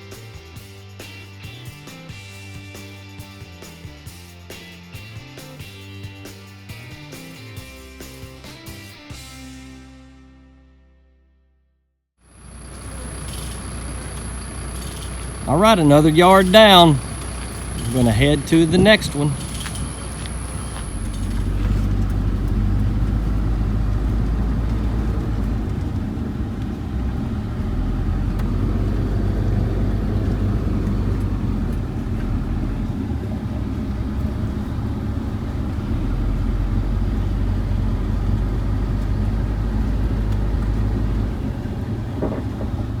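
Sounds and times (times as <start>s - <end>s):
truck engine and road rumble: 12.2s - 43.0s.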